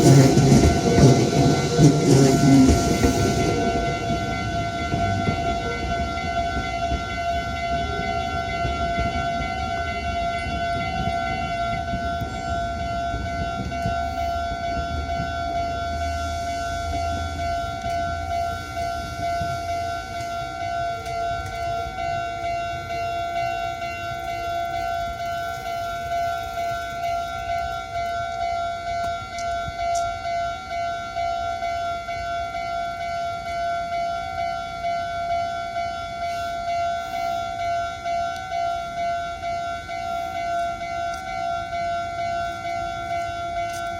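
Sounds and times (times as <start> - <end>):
low rumble: 0.0 - 9.3
level crossing alarm ringing: 0.0 - 43.9.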